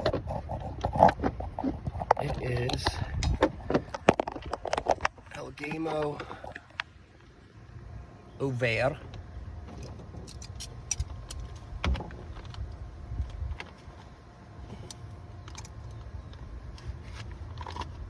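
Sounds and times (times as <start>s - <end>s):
low steady hum: 0.0s - 18.0s
metal parts and tools clinking: 9.8s - 11.6s.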